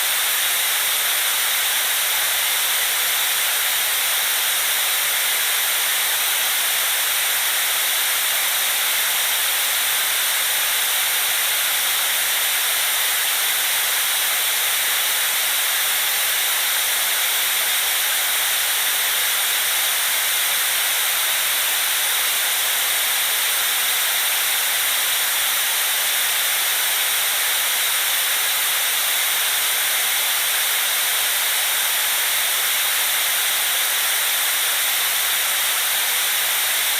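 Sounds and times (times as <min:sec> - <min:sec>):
electronic white noise hiss: 0:00.0 - 0:03.6.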